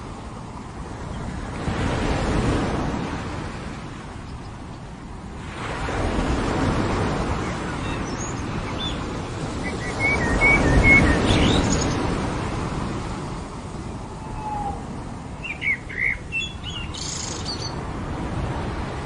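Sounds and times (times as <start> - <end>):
ocean waves breaking: 0.0 - 19.0
birds chirping: 7.3 - 12.1, 13.9 - 17.8.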